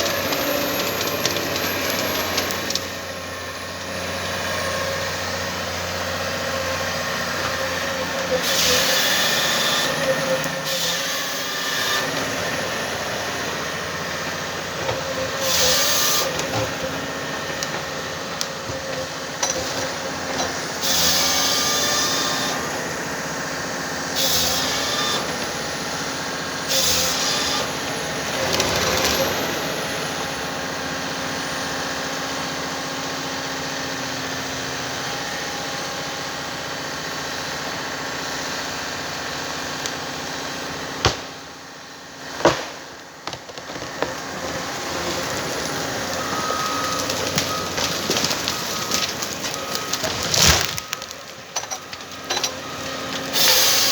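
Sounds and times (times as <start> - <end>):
hydraulic whine: 0.0 - 32.5, 44.0 - 53.9
harvester engine running: 0.0 - 36.9, 42.5 - 53.9.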